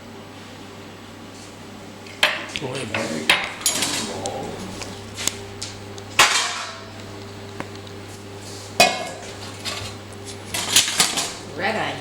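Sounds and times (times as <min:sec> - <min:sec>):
steady low hum: 0:00.0 - 0:12.0
plates and cutlery clattering: 0:02.8 - 0:04.1, 0:06.2 - 0:06.8, 0:08.8 - 0:11.4.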